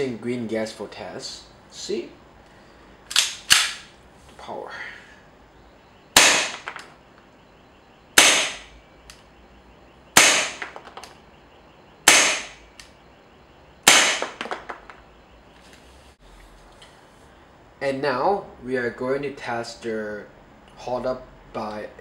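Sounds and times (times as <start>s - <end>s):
airsoft gun shots: 6.2s - 6.8s, 8.2s - 8.7s, 10.2s - 10.9s, 12.0s - 12.6s, 13.8s - 14.7s.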